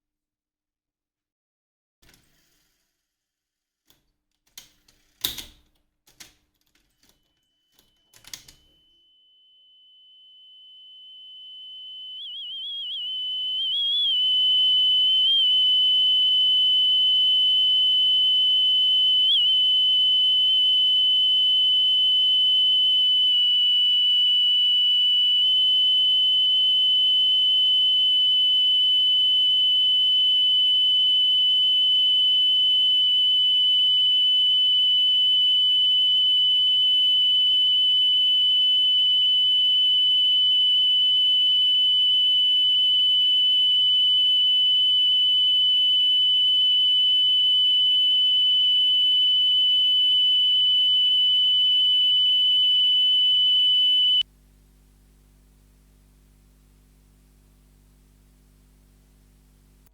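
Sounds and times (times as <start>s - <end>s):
steady test tone from cassette: 10.3s - 36.1s, 43.3s - 59.9s.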